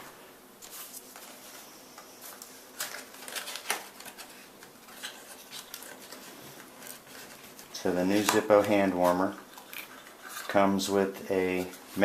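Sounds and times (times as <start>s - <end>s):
plastic and cardboard rustling: 0.0s - 12.0s
small packaging clicks: 2.3s - 10.6s.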